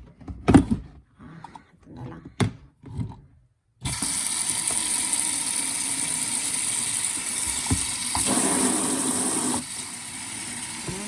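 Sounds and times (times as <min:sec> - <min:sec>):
tap water running into bucket: 0:03.8 - 0:11.0.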